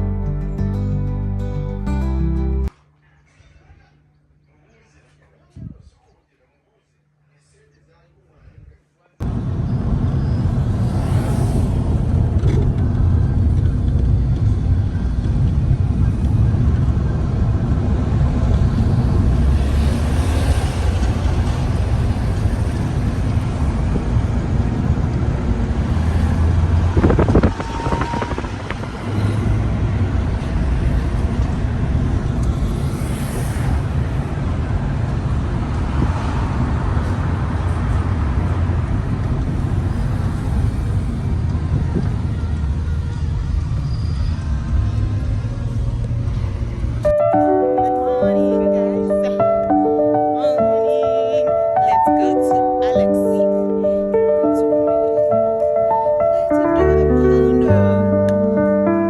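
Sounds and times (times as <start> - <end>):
vehicle rumbling on road: 9.2 - 51.9.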